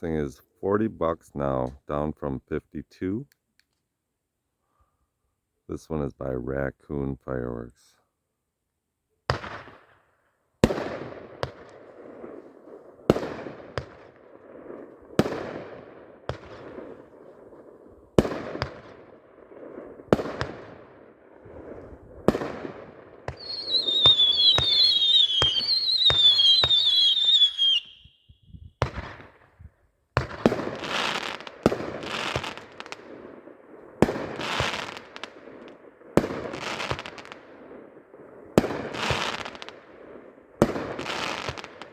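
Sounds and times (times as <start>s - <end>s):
firework shots and bursts: 9.3s - 10.0s, 10.6s - 28.0s, 28.8s - 41.9s
falling firework whistles: 23.3s - 28.8s.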